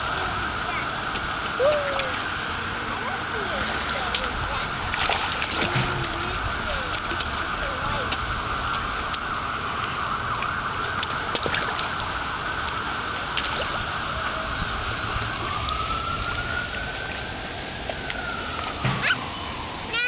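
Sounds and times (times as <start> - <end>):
emergency siren wailing: 5.7 - 20.0.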